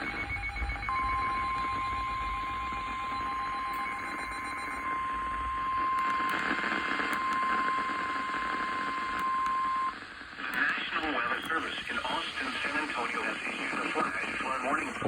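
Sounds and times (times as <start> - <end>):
steady warning alarm tone: 0.0 - 8.2
announcement voice: 10.5 - 15.0.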